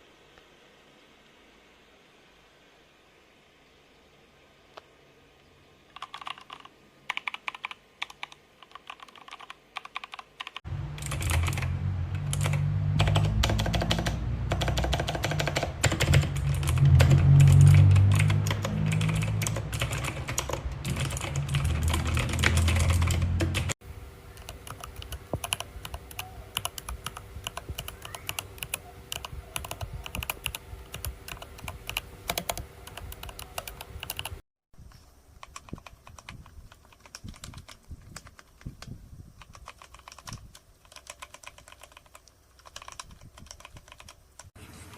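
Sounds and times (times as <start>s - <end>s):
mechanical keyboard typing: 5.9s - 34.4s, 35.4s - 44.6s
loud low rumble: 10.7s - 15.4s, 16.0s - 23.7s.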